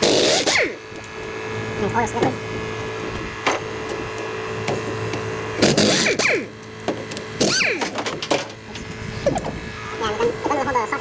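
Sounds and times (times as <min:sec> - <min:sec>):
steady hum: 0:00.0 - 0:11.0.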